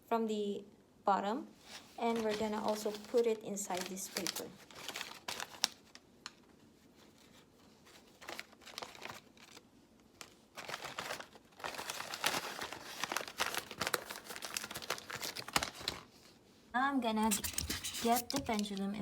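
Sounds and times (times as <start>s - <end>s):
paper crinkling and rustling: 1.6s - 16.4s, 17.2s - 19.0s.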